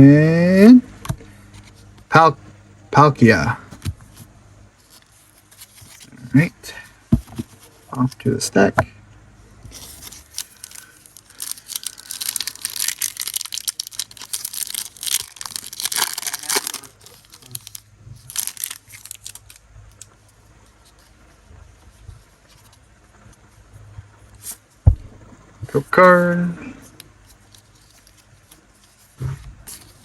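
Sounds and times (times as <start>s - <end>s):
faint handling noise: 3.6s - 25.5s, 26.8s - 30.0s
foil wrapper tearing and crinkling: 9.8s - 20.2s.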